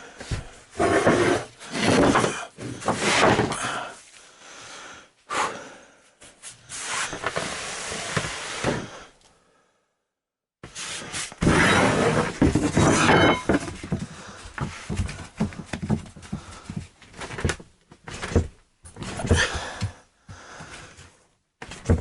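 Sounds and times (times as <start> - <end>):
boards scraping and rubbing: 0.7 - 3.8, 10.8 - 16.6.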